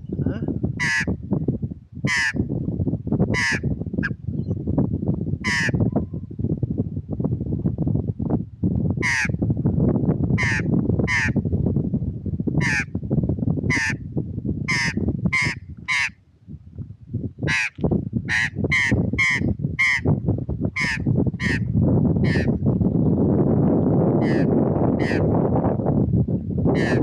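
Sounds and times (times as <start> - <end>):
steady low rumble: 0.0 - 27.0
bird harsh calls: 0.8 - 1.1, 2.1 - 2.4, 3.4 - 3.6, 5.4 - 5.8, 9.0 - 9.3, 10.4 - 11.3, 12.6 - 12.8, 13.7 - 14.0, 14.7 - 16.1, 17.5 - 17.7, 18.3 - 20.1, 20.8 - 21.6, 22.2 - 22.5, 24.2 - 25.3, 26.8 - 27.0.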